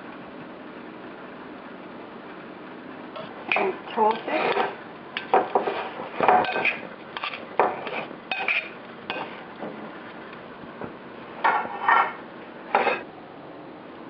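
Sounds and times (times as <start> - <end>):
utensils clinking against a bowl: 3.2 - 9.4, 11.4 - 13.0.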